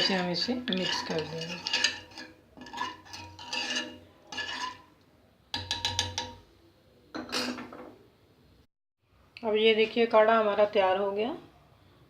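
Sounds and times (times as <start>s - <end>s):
spoon stirring in a pot: 0.0s - 5.0s, 5.6s - 6.4s.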